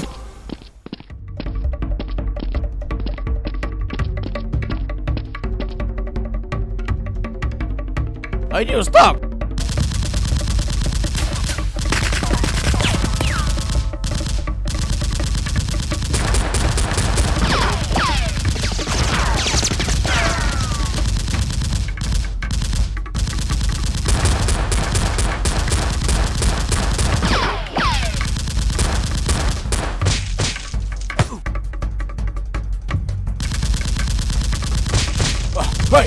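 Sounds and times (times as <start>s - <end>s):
automatic gunfire bursts: 9.6s - 18.6s, 20.1s - 30.0s.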